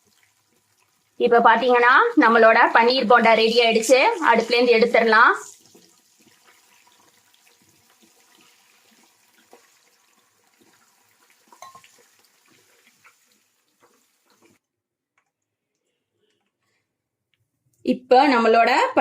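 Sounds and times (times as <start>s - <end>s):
food deep-frying in oil: 0.0s - 14.6s.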